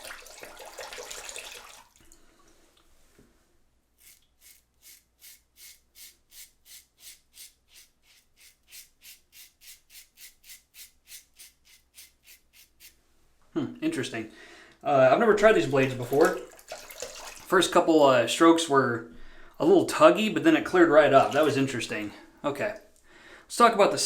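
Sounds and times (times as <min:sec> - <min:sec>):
razor scraping through stubble: 0:04.0 - 0:13.0.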